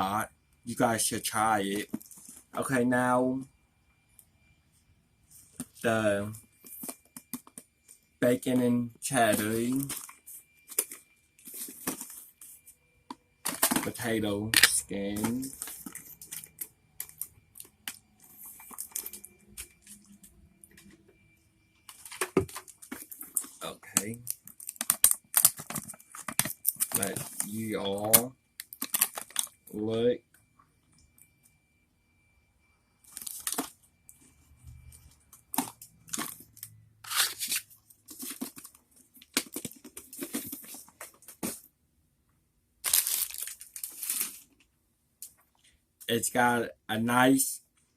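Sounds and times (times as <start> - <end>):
plastic chip bag crinkling and tearing: 22.0 - 29.6, 35.5 - 41.2, 42.8 - 44.6
snack bag rustling: 42.8 - 44.5.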